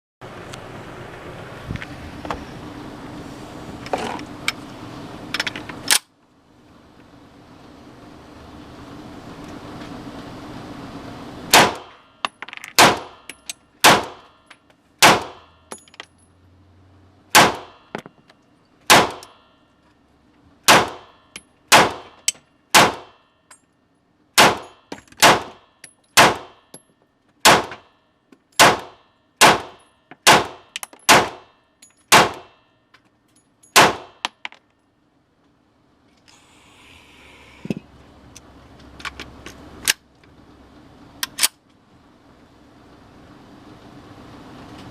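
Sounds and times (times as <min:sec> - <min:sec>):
pistol shots: 0:11.5 - 0:12.0, 0:12.8 - 0:13.2, 0:13.8 - 0:14.2, 0:15.0 - 0:15.5, 0:17.3 - 0:17.8, 0:18.9 - 0:19.3, 0:20.7 - 0:21.1, 0:21.7 - 0:22.2, 0:22.8 - 0:23.2, 0:24.4 - 0:25.6, 0:26.2 - 0:26.6, 0:27.4 - 0:27.8, 0:28.6 - 0:31.5, 0:32.1 - 0:32.6, 0:33.8 - 0:34.2.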